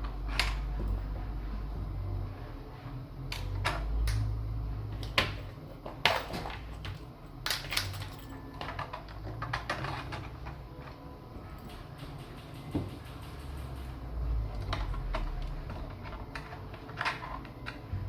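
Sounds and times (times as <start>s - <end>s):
keyboard keys clacking: 11.5s - 14.7s.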